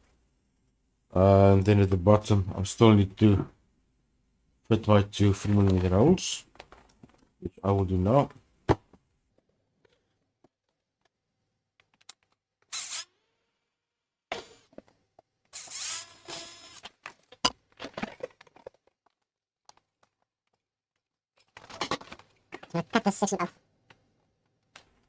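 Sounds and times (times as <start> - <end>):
small drill whining: 15.6 - 16.8.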